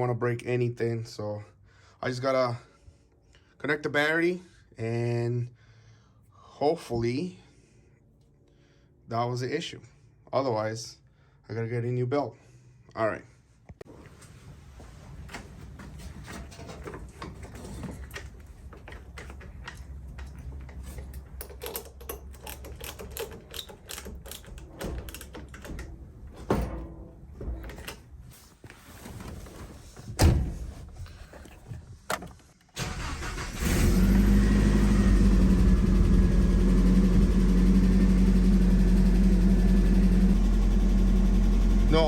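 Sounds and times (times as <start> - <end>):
truck engine starting and idling: 32.8 - 42.0.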